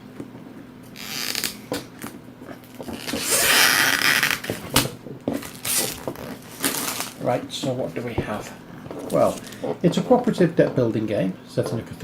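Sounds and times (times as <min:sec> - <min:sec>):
cellophane crinkling and tearing: 0:02.6 - 0:07.4, 0:09.0 - 0:09.6.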